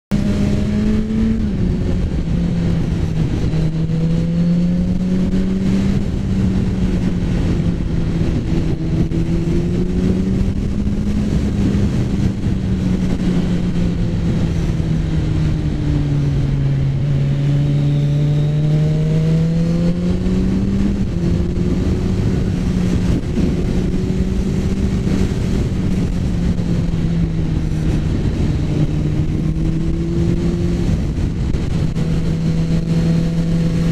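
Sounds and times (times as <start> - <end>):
motorcycle engine running: 0.1 - 33.9
wind noise: 0.1 - 33.9.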